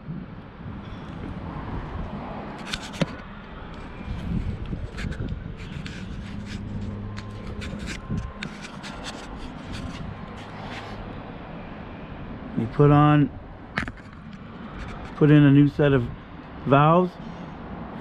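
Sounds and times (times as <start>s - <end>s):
rubbing and scraping: 2.6s - 11.0s, 13.8s - 15.3s.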